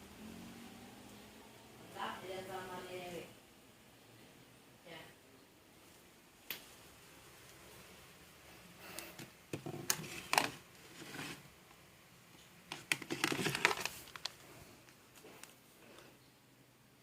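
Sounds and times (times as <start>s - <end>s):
hard objects clicking and tapping: 12.7s - 13.9s.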